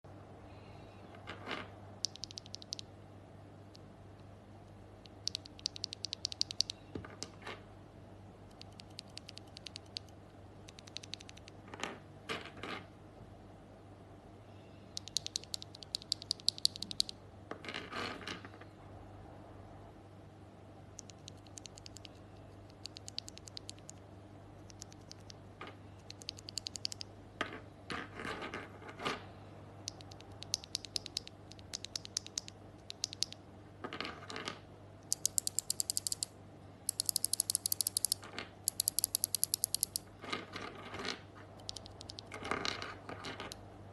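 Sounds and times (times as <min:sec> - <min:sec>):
faint steady hum: 0:00.0 - 0:43.9
mechanical keyboard typing: 0:02.0 - 0:02.9, 0:05.0 - 0:06.8, 0:08.5 - 0:11.6, 0:15.0 - 0:17.2, 0:21.0 - 0:24.0, 0:24.6 - 0:25.4, 0:26.0 - 0:27.1, 0:29.9 - 0:33.4, 0:35.1 - 0:36.3, 0:36.9 - 0:40.1, 0:41.6 - 0:42.4.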